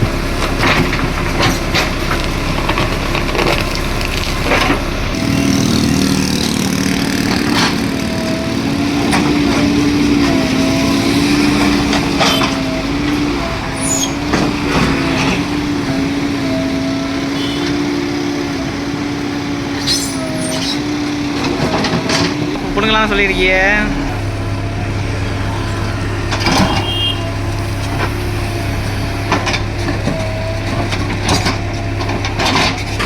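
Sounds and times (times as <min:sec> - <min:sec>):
diesel engine running under load: 0:00.0 - 0:33.0.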